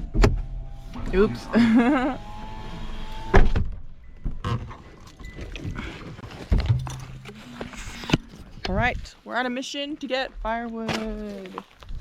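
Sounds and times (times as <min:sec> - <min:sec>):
sharp knocks and thuds: 0:06.2 - 0:08.3.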